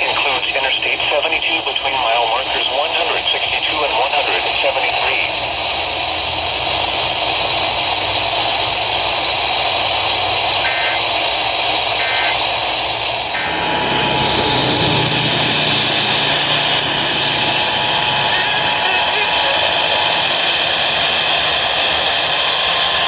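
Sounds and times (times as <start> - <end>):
radio static hiss: 0.0 - 5.5, 10.5 - 23.0
short data bursts: 10.6 - 12.6.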